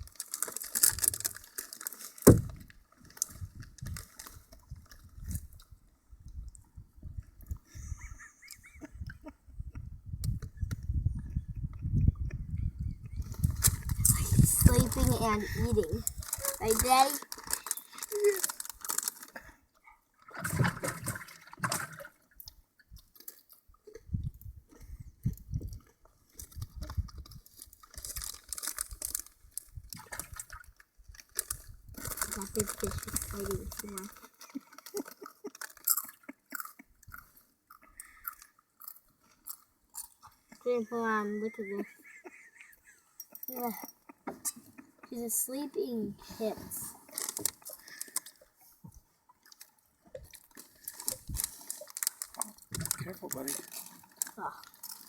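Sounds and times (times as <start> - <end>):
rustling: 0.0 - 4.5, 13.4 - 19.5, 31.3 - 36.0, 44.8 - 48.9, 50.4 - 55.0
child crunching chips: 0.0 - 5.6, 13.3 - 19.6, 25.5 - 40.6, 46.3 - 48.6, 49.4 - 55.0
loud thump: 2.3 - 2.6.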